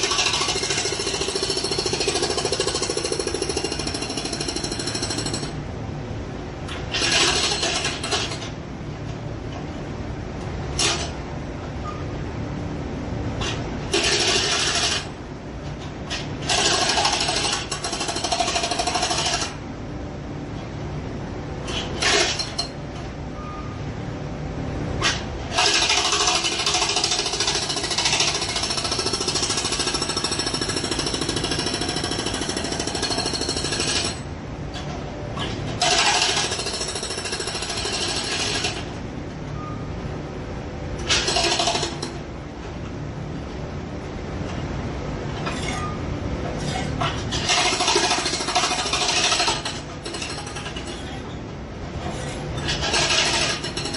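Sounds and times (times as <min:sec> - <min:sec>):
jackhammer breaking concrete: 0:00.0 - 0:05.5, 0:35.8 - 0:38.8, 0:47.4 - 0:51.0, 0:52.8 - 0:53.9.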